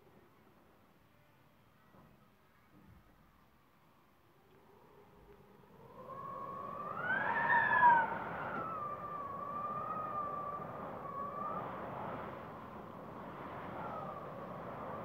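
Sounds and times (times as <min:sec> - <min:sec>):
wind howling: 0:04.5 - 0:15.0
wind whistling: 0:04.6 - 0:15.0.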